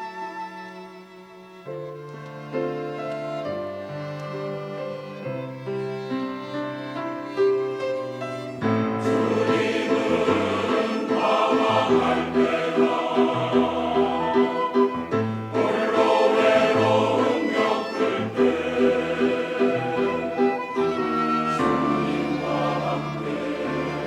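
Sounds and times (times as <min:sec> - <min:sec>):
church choir singing: 0:08.5 - 0:24.0.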